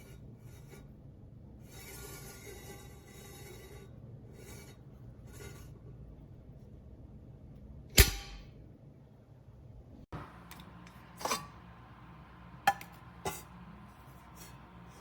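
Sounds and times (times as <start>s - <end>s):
low steady hum: 0.0s - 15.0s
metal kettle clanking: 10.5s - 11.6s.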